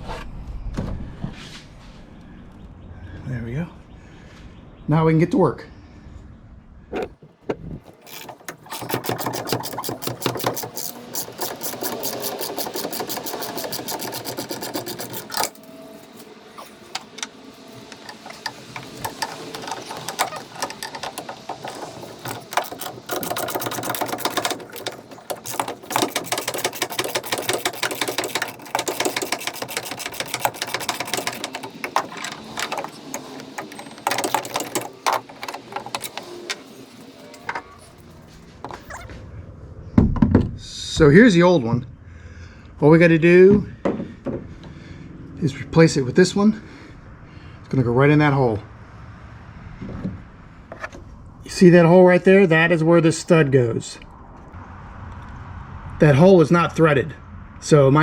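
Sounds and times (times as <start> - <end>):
power driver clattering: 6.9 - 39.0.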